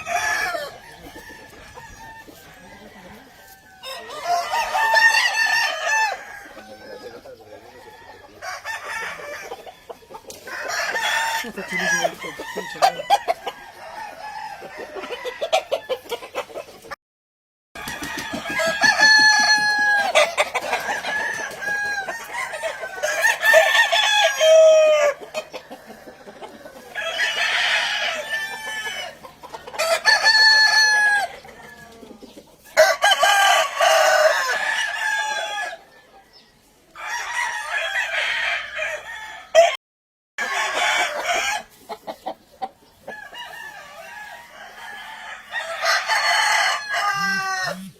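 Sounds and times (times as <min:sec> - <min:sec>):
roosters crowing: 0:00.0 - 0:16.9, 0:17.8 - 0:39.8, 0:40.4 - 0:47.9
chicken clucking: 0:00.0 - 0:17.0, 0:17.8 - 0:38.3, 0:40.4 - 0:47.9.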